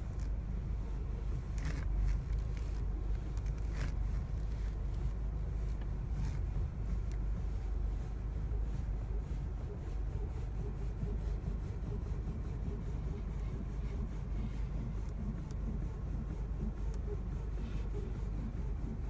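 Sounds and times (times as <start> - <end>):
car low rumble: 0.0 - 19.0
car steering creaking: 1.4 - 7.3.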